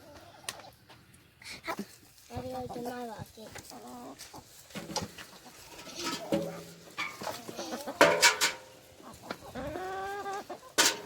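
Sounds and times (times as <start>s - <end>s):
hens clucking: 0.0s - 11.0s.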